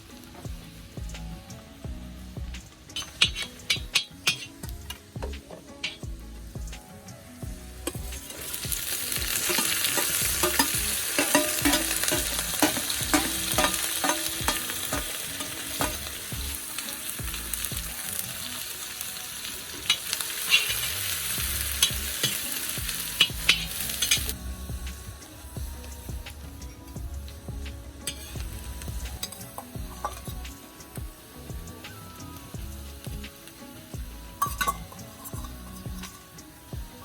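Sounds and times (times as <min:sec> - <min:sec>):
food sizzling in oil: 0:00.0 - 0:37.0
utensil scraping a pan: 0:06.9 - 0:18.8.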